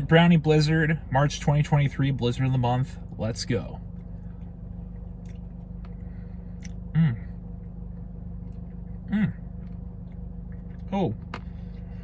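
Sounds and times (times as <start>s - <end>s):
steady low hum: 0.0s - 12.0s
man humming mmm: 6.9s - 7.4s, 9.0s - 9.5s.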